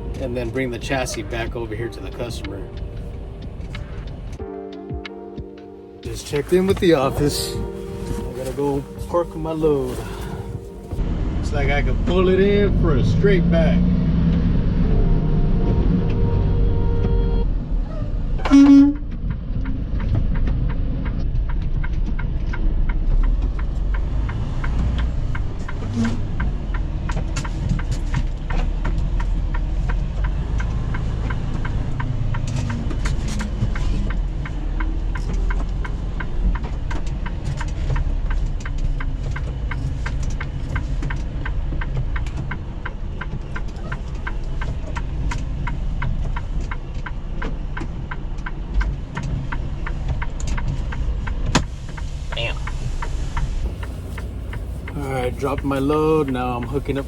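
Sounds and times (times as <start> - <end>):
steady rapid ticking: 0.0 - 5.2, 18.5 - 57.0
diesel truck engine running: 6.1 - 57.0
truck horn toot: 14.8 - 17.6, 18.4 - 19.0.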